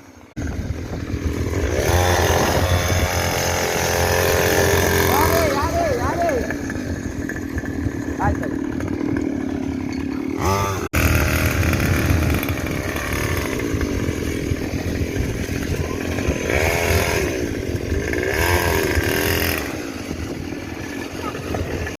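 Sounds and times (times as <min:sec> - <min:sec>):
small motorbike engine revving: 0:00.0 - 0:22.0.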